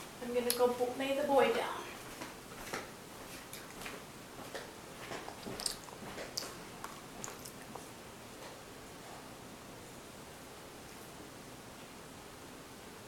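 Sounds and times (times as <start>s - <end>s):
child chewing food: 2.0s - 9.4s.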